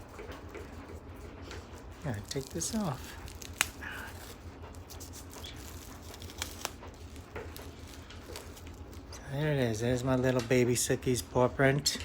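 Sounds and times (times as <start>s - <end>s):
covering peeled off crinkling: 1.5s - 10.6s.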